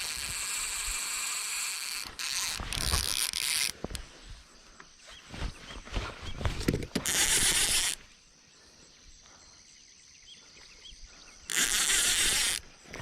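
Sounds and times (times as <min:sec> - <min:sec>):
fishing reel drag buzzing: 0:00.0 - 0:04.0, 0:06.9 - 0:08.1, 0:11.5 - 0:13.0.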